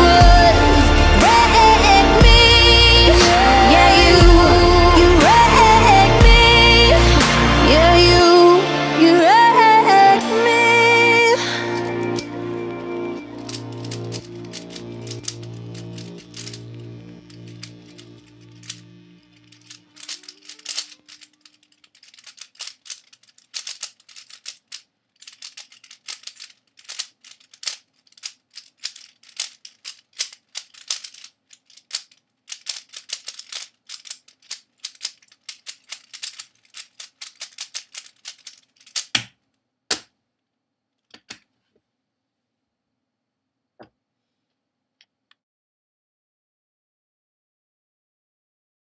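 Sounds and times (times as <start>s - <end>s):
puzzle cube plastic clicking: 13.3s - 40.1s, 41.0s - 41.5s.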